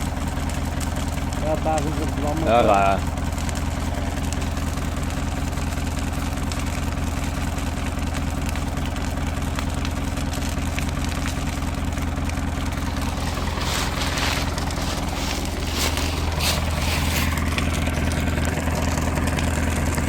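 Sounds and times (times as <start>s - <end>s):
diesel engine idling: 0.0s - 20.0s
bursts of hissing: 12.8s - 17.5s.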